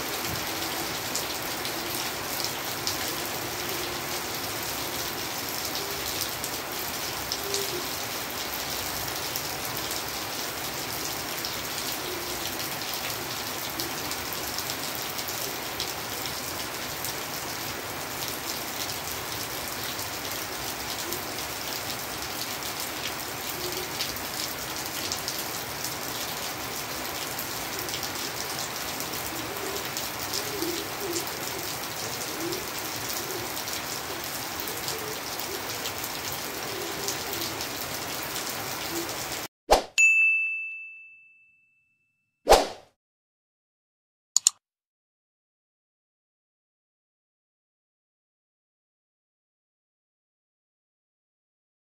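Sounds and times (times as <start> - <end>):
rain falling hiss: 0.0 - 39.5.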